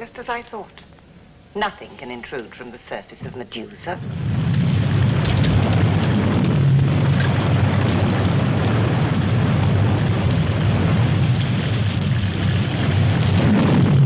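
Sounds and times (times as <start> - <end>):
wind and rain rushing: 3.3 - 14.0
low rumble: 3.9 - 14.0.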